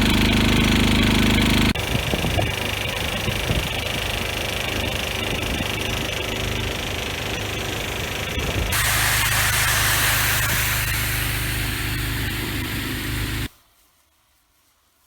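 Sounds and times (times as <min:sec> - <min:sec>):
low hum: 0:00.0 - 0:13.5
spraying hiss: 0:08.6 - 0:13.5.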